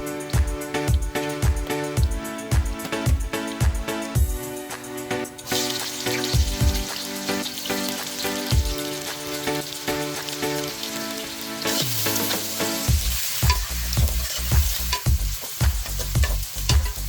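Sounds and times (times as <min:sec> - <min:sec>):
background music: 0:00.0 - 0:17.0
curry sizzling in a pan: 0:05.2 - 0:17.0.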